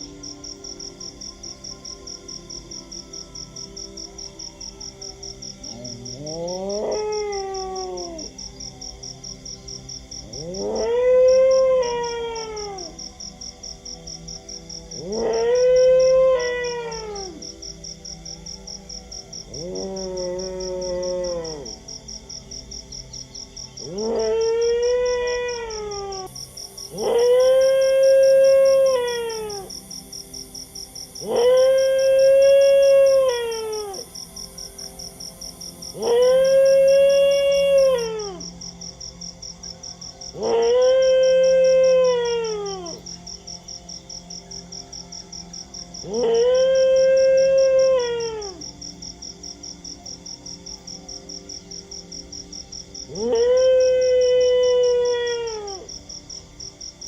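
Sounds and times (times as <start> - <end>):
dog howling: 5.7 - 8.4, 10.3 - 13.0, 15.0 - 17.4, 19.5 - 21.8, 23.8 - 29.7, 31.2 - 34.1, 36.0 - 38.6, 40.3 - 43.1, 46.0 - 48.8, 53.1 - 55.9.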